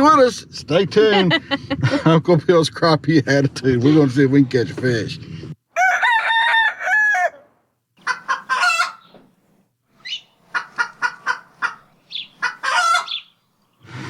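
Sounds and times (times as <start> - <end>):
rooster crowing: 5.7 - 7.5.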